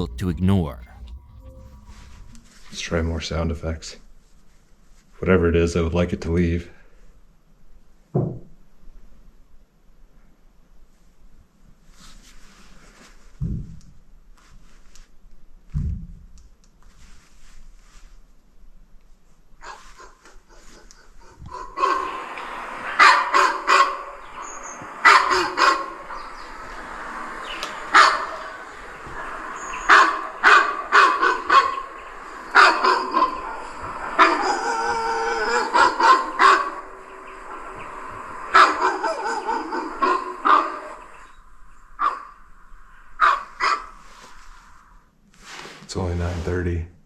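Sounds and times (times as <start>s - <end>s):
recorded dog barking: 29.9s - 36.9s
recorded dog howling: 29.9s - 41.1s.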